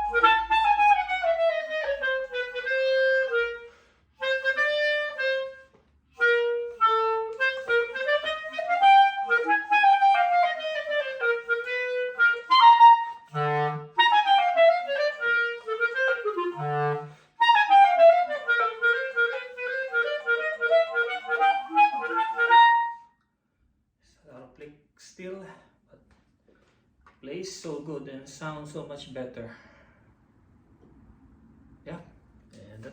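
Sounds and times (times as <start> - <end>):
solo clarinet runs: 0.0 - 23.1.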